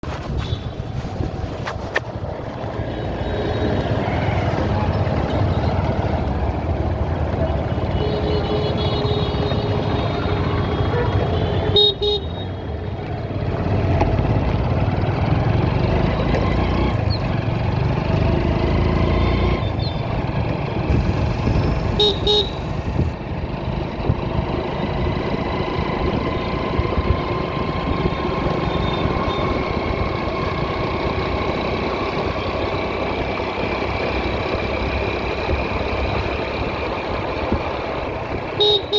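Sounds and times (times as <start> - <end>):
motorcycle engine: 0.0 - 38.9
vehicle horns honking: 0.3 - 1.0, 7.7 - 12.8, 21.9 - 23.0, 38.5 - 38.9.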